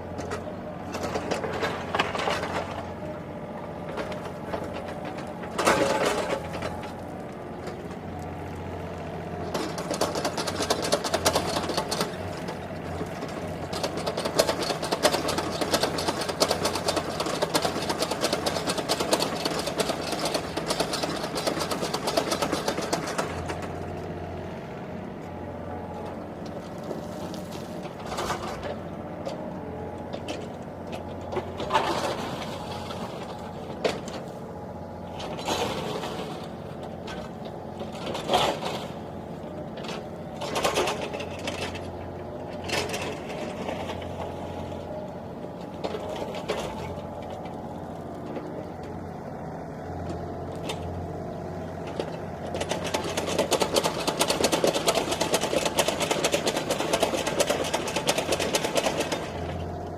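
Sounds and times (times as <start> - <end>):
fast mechanical clatter: 9.5 - 12.4, 13.2 - 23.9, 52.0 - 59.7.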